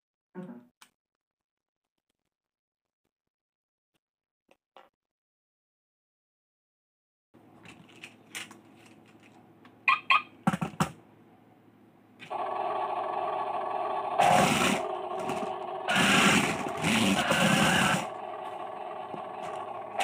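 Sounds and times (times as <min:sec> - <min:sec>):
small electric motor whirring: 0:14.0 - 0:20.0.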